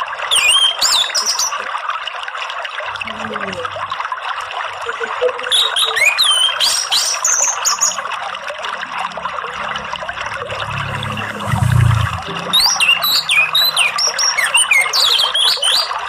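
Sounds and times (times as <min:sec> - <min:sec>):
trickle of running water: 0:00.0 - 0:16.0
low rumble: 0:09.4 - 0:12.8.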